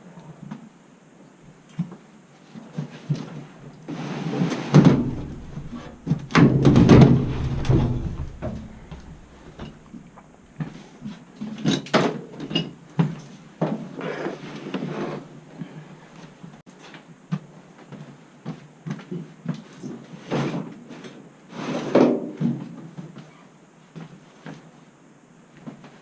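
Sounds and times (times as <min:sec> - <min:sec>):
objects knocking and scraping: 0:04.0 - 0:10.8.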